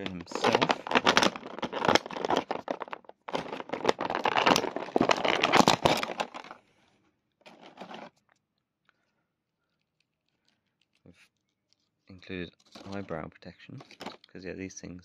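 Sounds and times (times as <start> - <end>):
plastic packaging crinkling: 0.0 - 6.6, 7.5 - 8.2.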